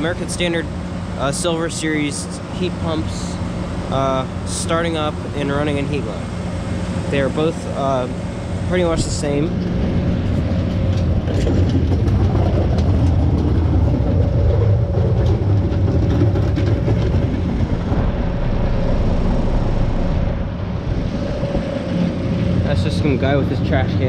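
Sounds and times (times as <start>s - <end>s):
heat pump units humming: 0.0s - 24.0s
trash can rolling and rattling: 9.6s - 19.2s.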